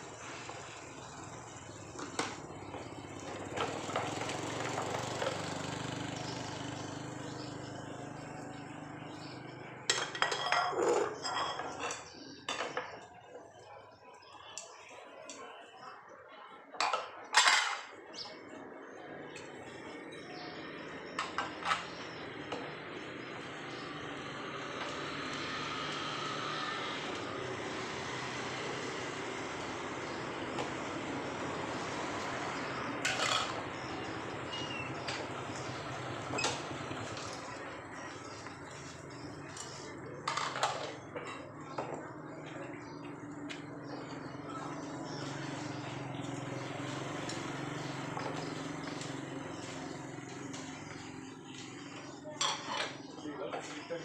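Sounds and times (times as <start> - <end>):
clinking dishes and cutlery: 9.9 - 13.0, 16.8 - 17.9, 52.4 - 53.0.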